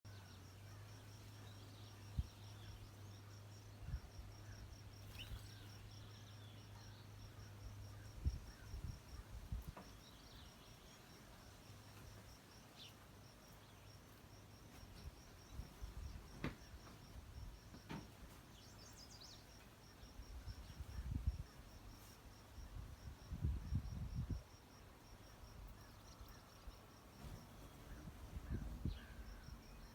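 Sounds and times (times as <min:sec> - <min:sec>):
faint bird chirps: 0:00.1 - 0:11.4, 0:25.7 - 0:29.9
insect chirping: 0:00.1 - 0:29.9.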